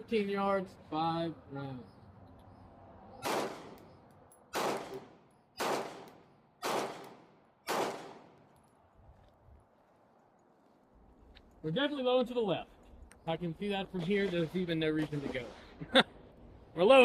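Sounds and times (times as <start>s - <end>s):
pistol shots: 3.2s - 8.5s.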